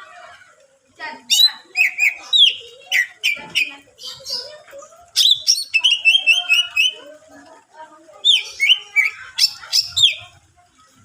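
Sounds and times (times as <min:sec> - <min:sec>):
bird chirping and whistling: 0:05.2 - 0:07.0.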